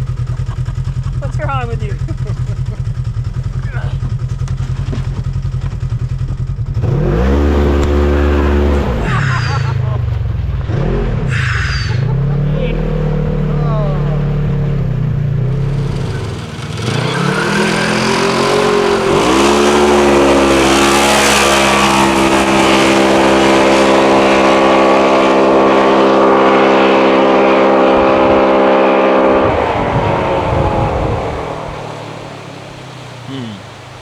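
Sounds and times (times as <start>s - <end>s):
engine revving: 6.7s - 9.4s, 15.4s - 34.0s.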